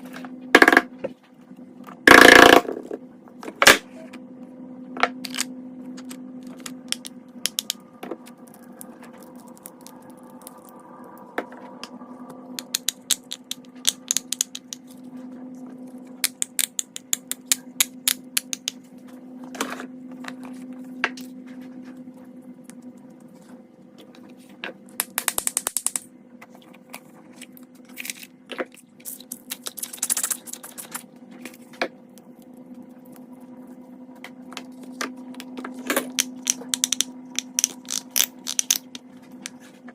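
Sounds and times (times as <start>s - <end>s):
steady low hum: 0.0s - 39.9s
fidget toys clicking and popping: 6.9s - 7.8s, 12.6s - 14.8s, 36.1s - 39.0s.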